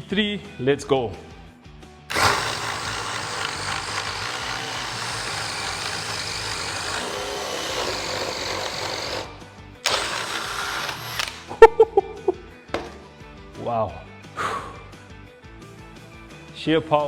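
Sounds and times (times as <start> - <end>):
hammer drill boring: 2.1 - 11.6.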